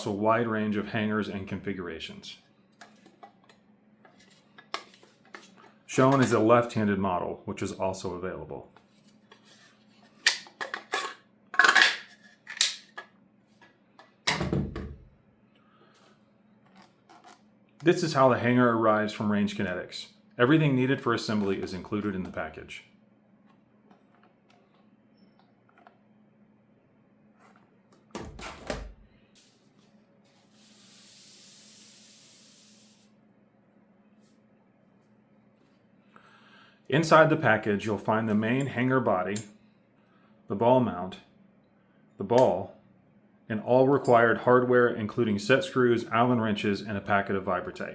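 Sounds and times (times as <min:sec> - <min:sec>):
high hissing rustle: 0:30.4 - 0:33.1.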